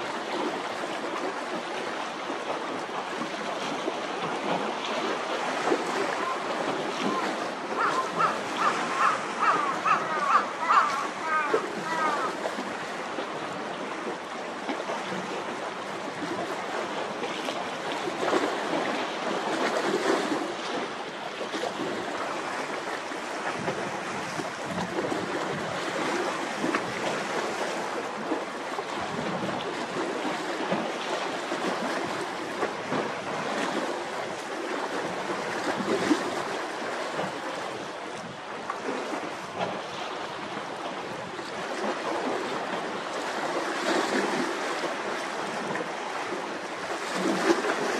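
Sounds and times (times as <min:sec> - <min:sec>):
waves washing: 0:00.0 - 0:47.9
wind gusting over microphone: 0:23.4 - 0:27.6.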